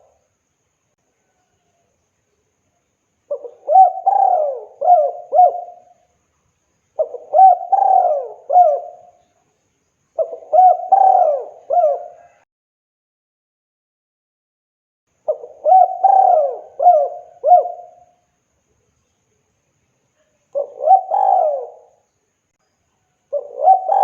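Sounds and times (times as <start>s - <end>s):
dove cooing: 3.3s - 6.0s, 7.0s - 9.2s, 10.2s - 12.4s, 15.3s - 18.2s, 20.6s - 22.0s, 23.3s - 24.0s.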